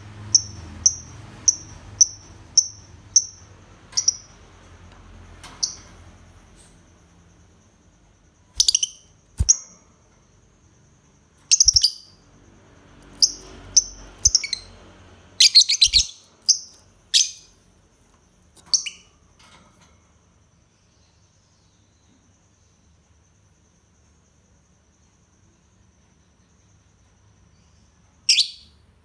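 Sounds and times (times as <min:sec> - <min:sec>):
bird chirping: 0:00.3 - 0:04.4, 0:08.5 - 0:09.8, 0:11.4 - 0:17.6, 0:18.6 - 0:19.2, 0:27.6 - 0:28.8.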